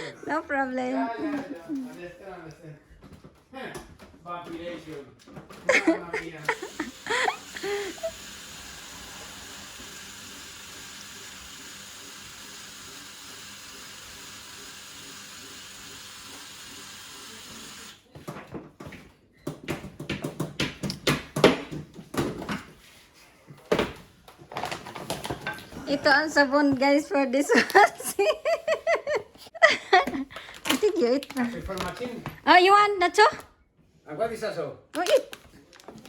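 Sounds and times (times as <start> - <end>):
water running: 5.7 - 18.1.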